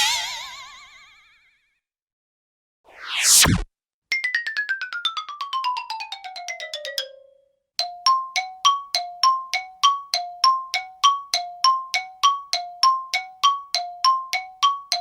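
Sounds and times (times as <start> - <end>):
falling run of tones: 2.9 - 3.6.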